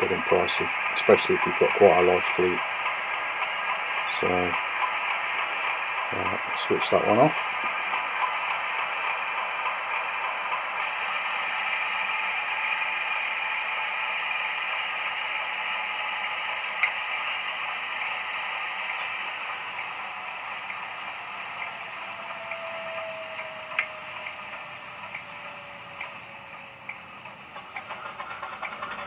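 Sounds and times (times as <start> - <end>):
falling whine: 0.0 - 29.0
model train engine sound: 0.0 - 29.0
sharp clicks: 14.9 - 29.0.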